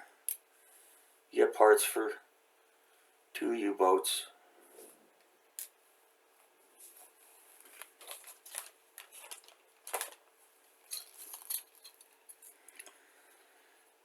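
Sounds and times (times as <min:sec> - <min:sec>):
plastic parts clicking and rattling: 0:07.6 - 0:13.0.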